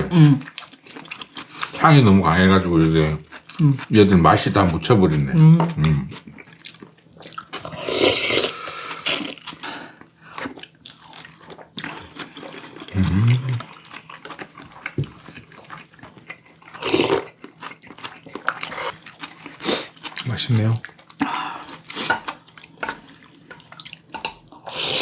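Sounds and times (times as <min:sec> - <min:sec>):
chewing and biting food: 0:00.4 - 0:01.8, 0:02.7 - 0:07.7, 0:10.3 - 0:24.6
short low vocal hum: 0:12.9 - 0:13.6.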